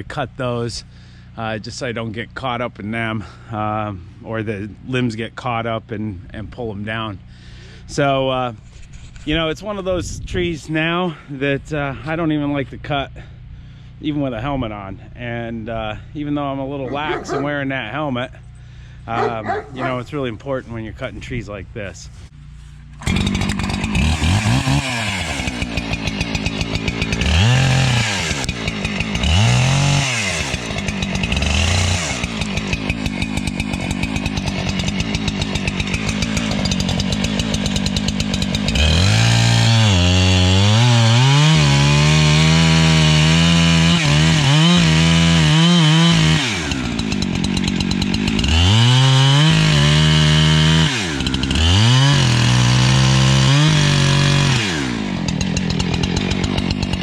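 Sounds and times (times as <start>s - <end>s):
chainsaw idling and revving: 16.2s - 20.4s, 22.8s - 57.0s.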